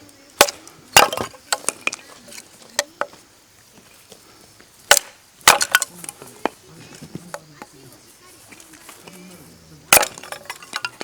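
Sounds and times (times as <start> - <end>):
sharp knocks and clinks: 9.9 - 11.0.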